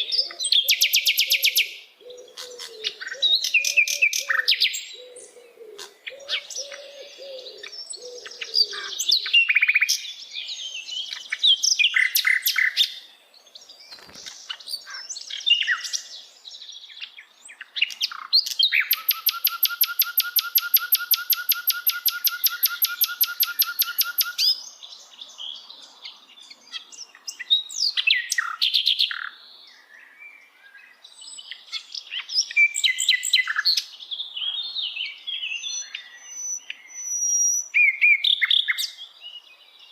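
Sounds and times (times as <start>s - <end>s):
bird chirping and warbling: 0.0s - 16.2s, 17.0s - 29.9s
rapid bird trill: 18.7s - 24.6s.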